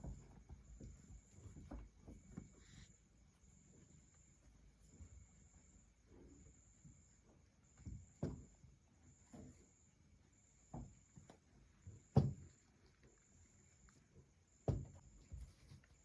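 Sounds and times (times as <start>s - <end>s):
soft thumps and knocks: 0.0s - 2.9s, 12.0s - 12.6s, 14.6s - 16.0s.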